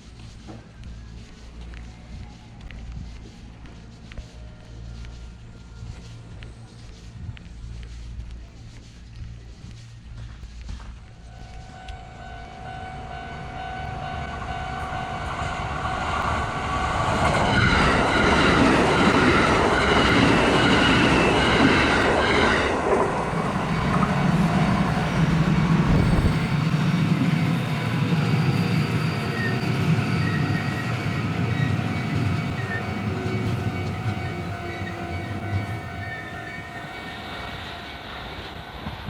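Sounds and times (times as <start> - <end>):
train passing: 9.8 - 39.0.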